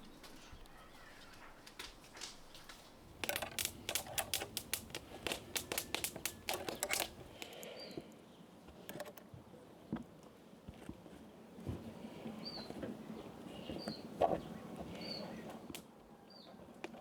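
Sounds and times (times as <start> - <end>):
sharp irregular clicks: 2.2 - 7.7.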